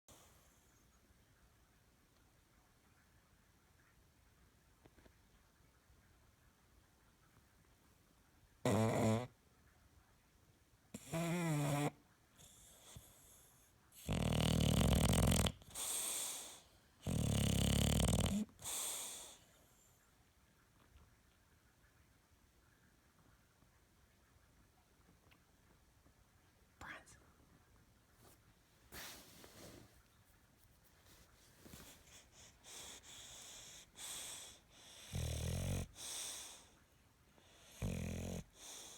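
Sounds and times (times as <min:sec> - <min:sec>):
dog snoring loudly: 0:08.6 - 0:09.3, 0:11.0 - 0:13.3, 0:14.0 - 0:19.3, 0:32.4 - 0:36.6, 0:37.6 - 0:38.9.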